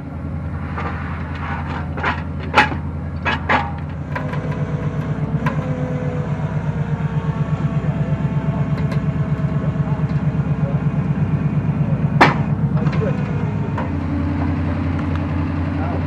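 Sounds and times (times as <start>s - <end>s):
vehicle engine running: 0.0s - 16.0s
sharp metallic knocks: 12.1s - 15.2s.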